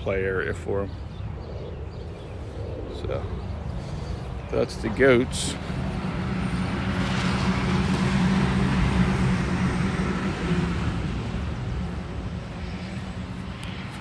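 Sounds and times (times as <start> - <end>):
steady low hum: 0.9 - 14.0
vehicle passing: 2.4 - 14.0.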